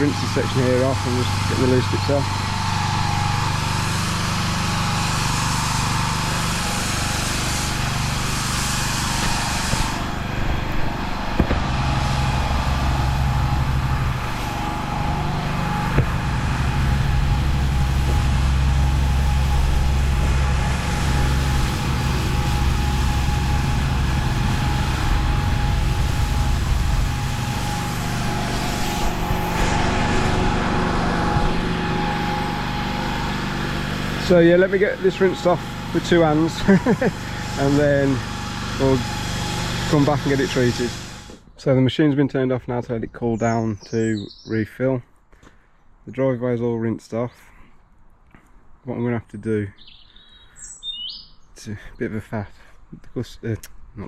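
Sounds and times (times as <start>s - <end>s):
pressure washer engine running: 0.0s - 41.4s
water spray hissing on paving: 3.5s - 14.5s, 15.8s - 29.7s, 34.0s - 41.4s.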